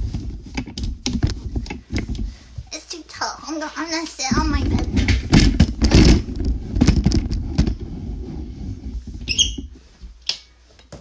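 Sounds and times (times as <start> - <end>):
short high squeak: 9.3 - 9.6.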